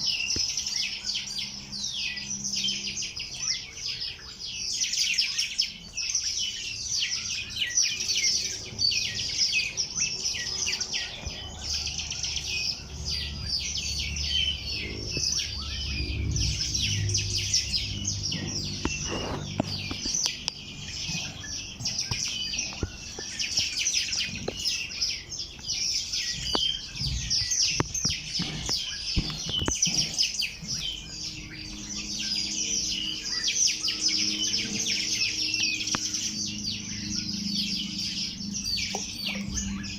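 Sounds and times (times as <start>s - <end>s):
small birds chirping: 0.0s - 39.9s
faint low rumble: 8.6s - 39.9s.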